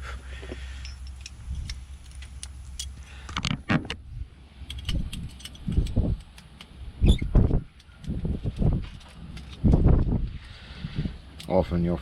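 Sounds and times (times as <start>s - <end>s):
metal lock parts clicking: 4.6s - 9.8s
dull low thumps: 9.6s - 11.2s.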